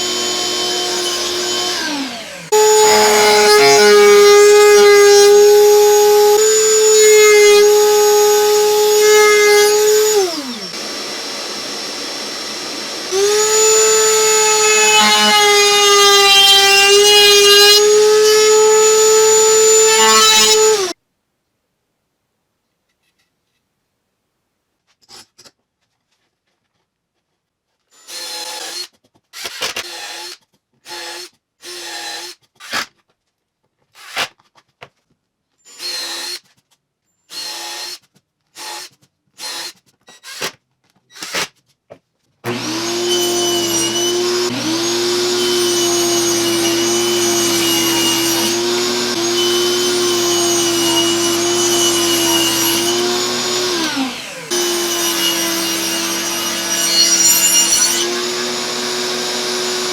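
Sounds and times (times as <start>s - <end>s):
electric power tool motor: 0.0s - 21.0s, 42.5s - 59.9s.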